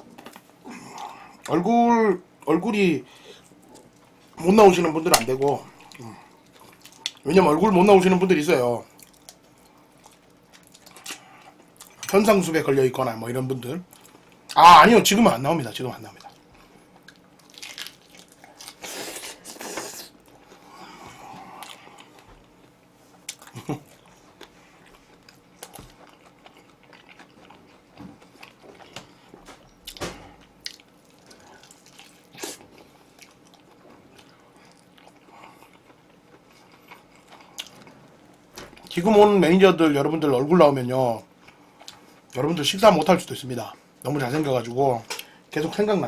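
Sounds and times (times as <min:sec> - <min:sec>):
person chewing food: 0:05.6 - 0:07.2, 0:08.9 - 0:12.1, 0:16.2 - 0:39.0.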